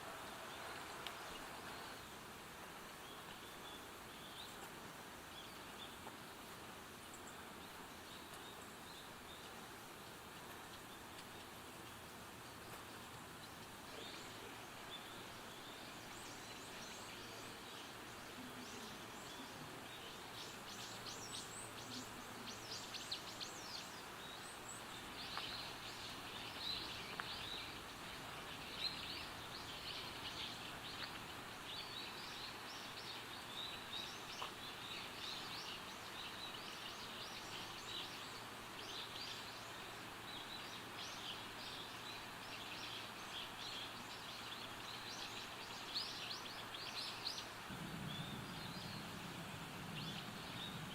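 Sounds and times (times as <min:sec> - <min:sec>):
faint steady hiss: 0:00.0 - 0:50.9
small birds chirping: 0:00.2 - 0:50.9.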